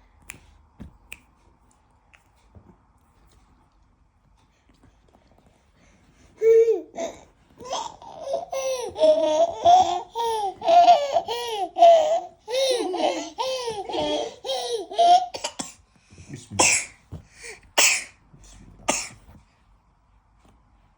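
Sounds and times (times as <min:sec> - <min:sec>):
baby laughing: 0:06.4 - 0:15.7
breathy cough-like bursts: 0:16.5 - 0:18.2, 0:18.9 - 0:19.2.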